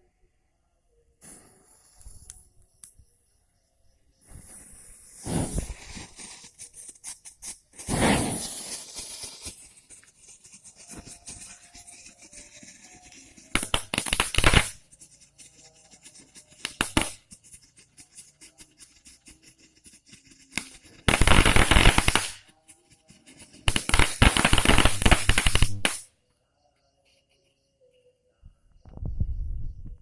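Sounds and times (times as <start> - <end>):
fireworks crackling pops: 1.2 - 3.0, 4.2 - 6.5, 7.7 - 10.1, 13.5 - 14.9, 16.6 - 17.4, 20.6 - 22.5, 23.6 - 26.1.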